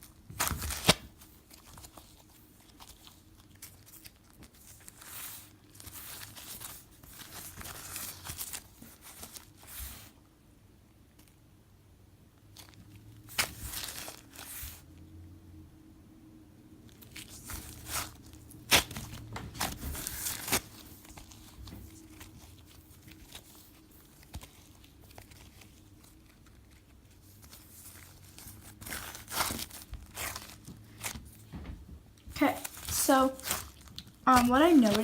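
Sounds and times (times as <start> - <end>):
hands squishing sticky slime: 32.2 - 35.0.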